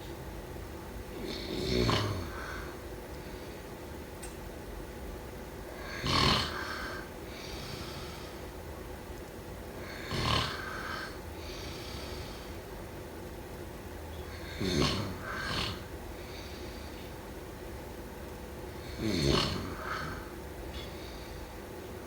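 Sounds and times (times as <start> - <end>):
person snoring: 1.2 - 2.8, 5.8 - 8.4, 9.8 - 12.6, 14.3 - 16.8, 18.8 - 20.3.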